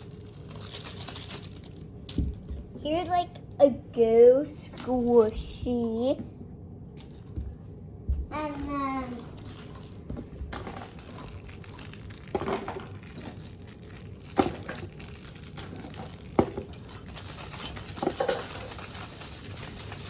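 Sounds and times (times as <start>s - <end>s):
fidget toys crinkling and rustling: 0.0s - 3.3s, 9.0s - 20.0s.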